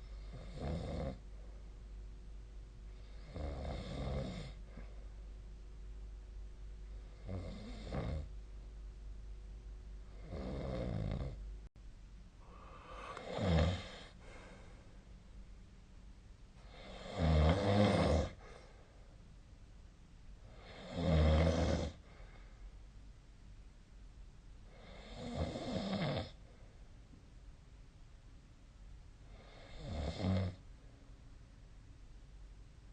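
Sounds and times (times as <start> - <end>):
person snoring: 0.1 - 1.2, 3.0 - 4.9, 7.1 - 8.3, 10.1 - 11.4, 12.4 - 14.8, 16.6 - 18.7, 20.5 - 22.0, 24.7 - 26.4, 29.3 - 30.6.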